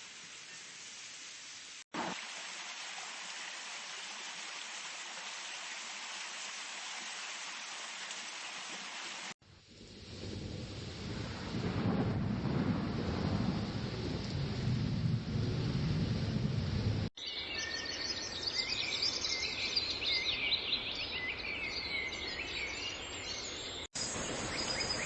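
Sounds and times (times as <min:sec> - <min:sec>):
steady rain: 0:00.0 - 0:17.1, 0:24.0 - 0:25.0
rumbling thunder: 0:09.7 - 0:17.1.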